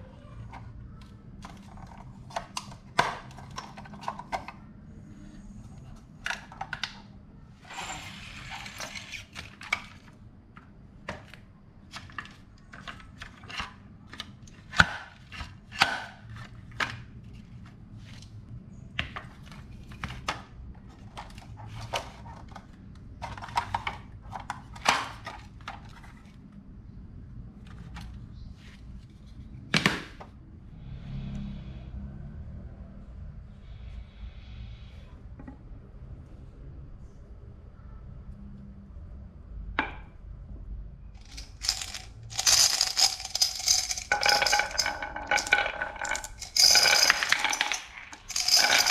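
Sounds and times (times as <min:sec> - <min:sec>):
marbles clacking down wooden run: 0:41.2 - 0:48.9.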